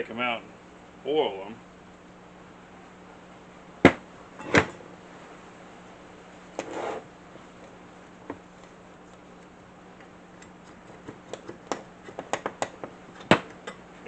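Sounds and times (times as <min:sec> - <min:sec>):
sharp knocks: 0:03.8 - 0:04.8.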